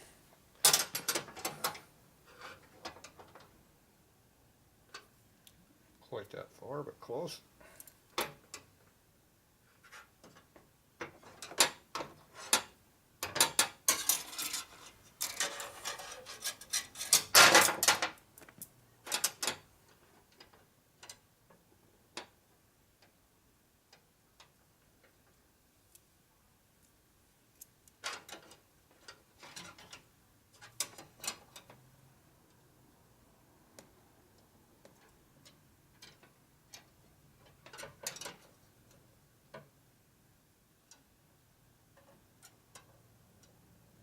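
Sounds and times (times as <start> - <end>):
metal rattling and scraping: 13.9 - 18.0.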